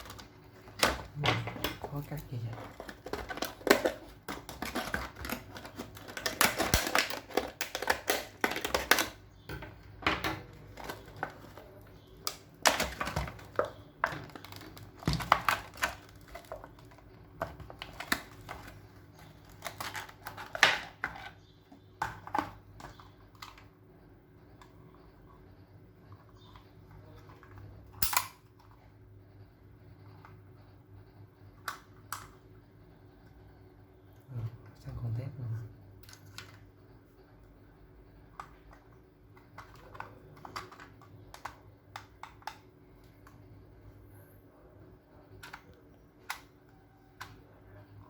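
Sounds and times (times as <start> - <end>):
plastic packaging handled: 0.0 - 9.2, 10.4 - 23.6.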